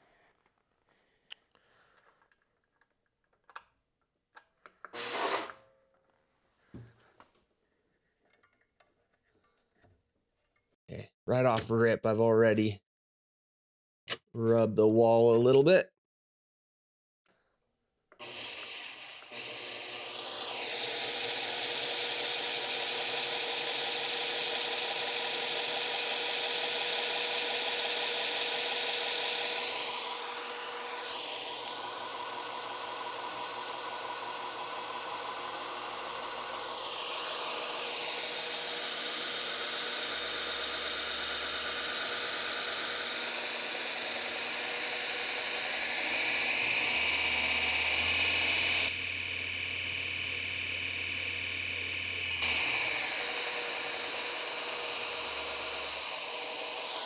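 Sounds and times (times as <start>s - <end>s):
belt grinder motor running: 18.2s - 57.0s.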